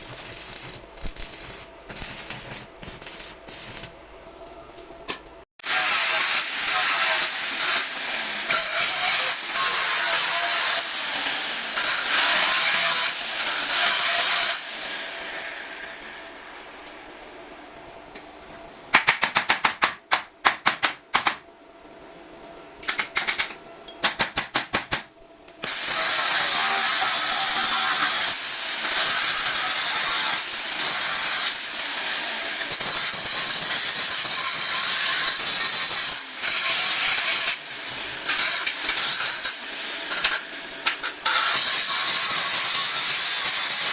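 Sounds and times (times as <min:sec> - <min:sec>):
hissing machine noise: 0:00.0 - 0:05.2.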